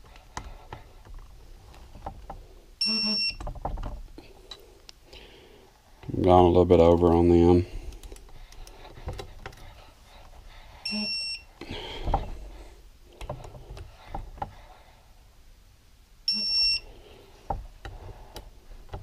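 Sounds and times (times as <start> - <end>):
torque wrench beeping: 2.8 - 3.4, 10.8 - 11.5, 16.3 - 16.9.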